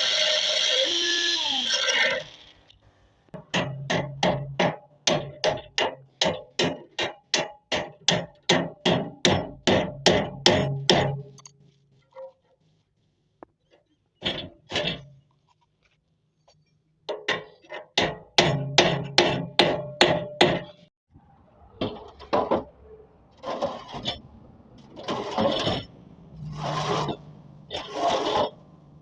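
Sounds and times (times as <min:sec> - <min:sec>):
hammer strikes: 0:03.4 - 0:11.6, 0:17.1 - 0:20.9
long rough sounds: 0:23.1 - 0:29.0.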